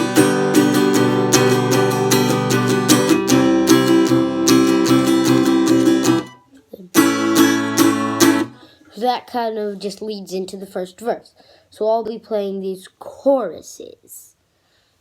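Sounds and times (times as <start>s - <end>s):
acoustic guitar strumming: 0.0s - 8.7s.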